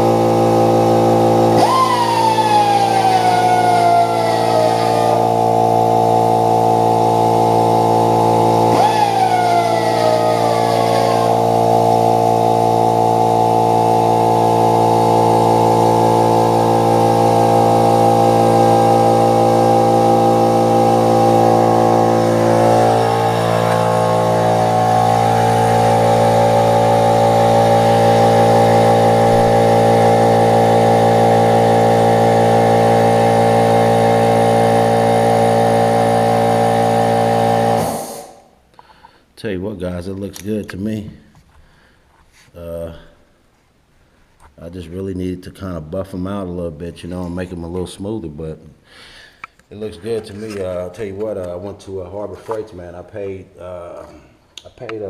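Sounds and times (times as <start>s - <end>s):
electric grinding tool whining: 0.0s - 38.5s.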